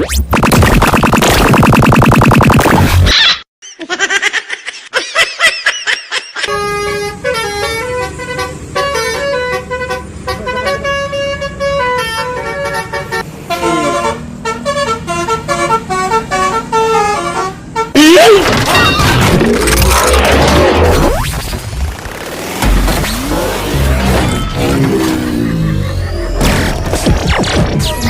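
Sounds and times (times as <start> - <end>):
multi-tone bus horn tune: 6.5 - 18.0.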